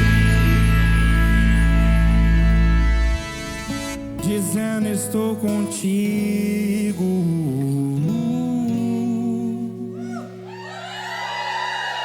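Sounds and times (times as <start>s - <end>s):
live band playing gospel song: 0.0s - 4.7s
lead melody bending in pitch: 0.0s - 4.9s.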